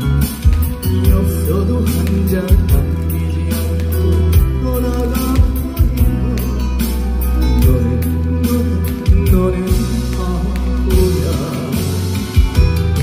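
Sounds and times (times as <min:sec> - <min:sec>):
trot song over loudspeakers: 0:00.0 - 0:13.0.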